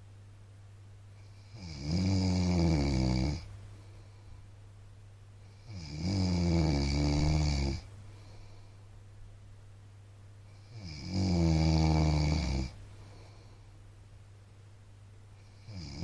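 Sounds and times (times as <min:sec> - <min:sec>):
man snoring: 0:01.4 - 0:03.5, 0:05.6 - 0:07.9, 0:10.6 - 0:12.8, 0:15.6 - 0:16.0.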